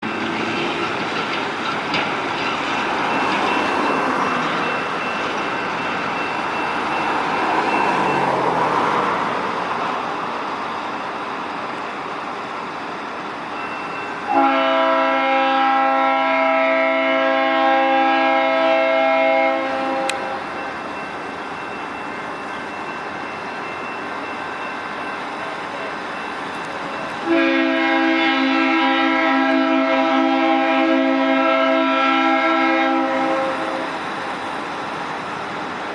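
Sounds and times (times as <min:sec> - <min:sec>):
train rumbling on rails: 0:00.0 - 0:35.9
locomotive air horn blast: 0:14.3 - 0:20.4, 0:27.2 - 0:34.0.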